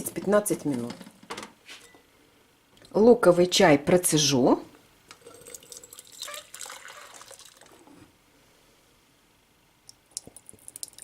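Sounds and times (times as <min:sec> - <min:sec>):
liquid pouring through strainer: 0:05.1 - 0:08.0
light clicks or drips: 0:09.9 - 0:11.0.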